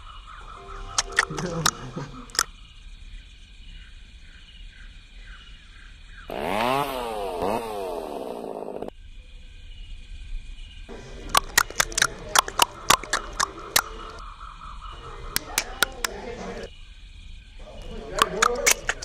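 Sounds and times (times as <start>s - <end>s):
chainsaw revving: 6.3s - 8.9s.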